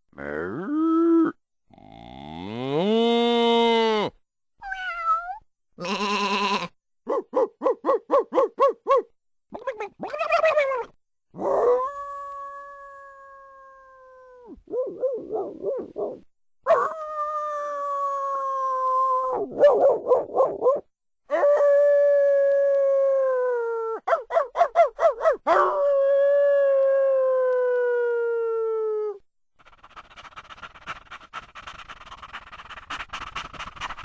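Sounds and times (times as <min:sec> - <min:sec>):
dog yelping: 0:14.7 - 0:17.0, 0:24.1 - 0:25.8
dog howling: 0:16.7 - 0:19.6, 0:25.2 - 0:29.2.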